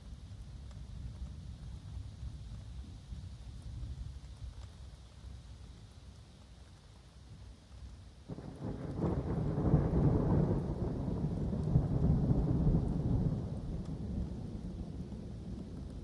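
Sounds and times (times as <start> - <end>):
steady rain falling: 0.0 - 16.0
thunder rumble: 8.3 - 16.0.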